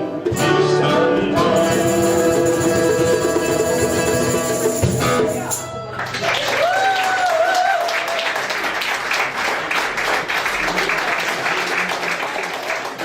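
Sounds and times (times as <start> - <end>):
audience applauding: 5.9 - 13.0
wavering cheer: 6.2 - 8.6.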